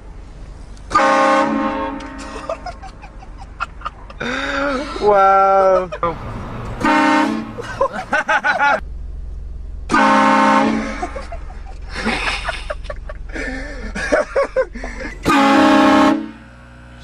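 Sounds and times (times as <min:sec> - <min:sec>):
train horn blast: 0:00.9 - 0:02.4, 0:06.8 - 0:07.6, 0:09.9 - 0:11.2, 0:15.2 - 0:17.0
low rumble: 0:05.8 - 0:15.3.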